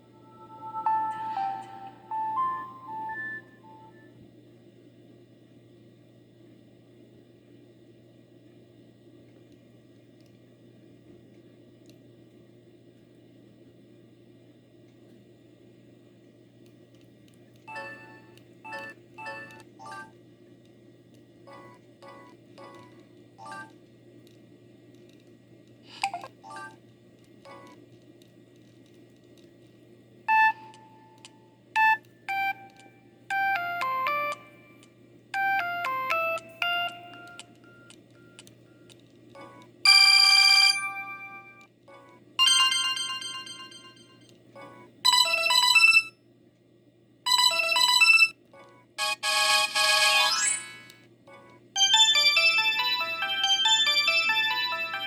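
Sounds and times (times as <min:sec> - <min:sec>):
phone ringtone melodies: 0:00.0 - 0:04.0, 0:31.8 - 0:34.8, 0:35.4 - 0:38.4, 0:39.4 - 0:41.6, 0:42.4 - 0:44.2, 0:49.0 - 0:50.9, 0:51.8 - 0:55.0
faint steady hum: 0:00.0 - 0:55.0.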